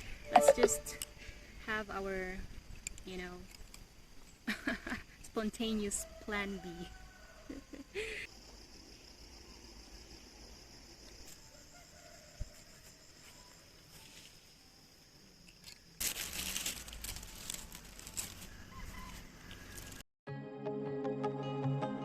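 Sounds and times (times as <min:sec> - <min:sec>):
soft music: 0:00.2 - 0:01.1, 0:20.3 - 0:22.0
high-pitched hum: 0:00.3 - 0:01.2
distant chickens: 0:05.8 - 0:08.6, 0:11.4 - 0:13.6, 0:16.8 - 0:20.0
rustling scratchy noise: 0:16.0 - 0:20.0.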